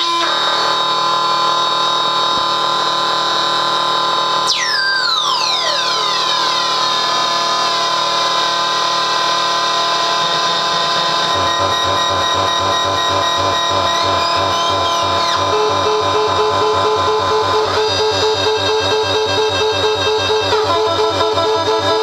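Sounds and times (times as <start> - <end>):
synth drone: 0.4 - 22.0
sliding synth pitches: 4.4 - 22.0.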